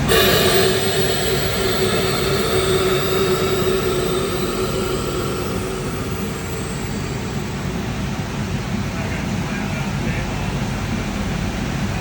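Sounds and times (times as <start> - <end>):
machining center whirring: 0.0 - 8.8.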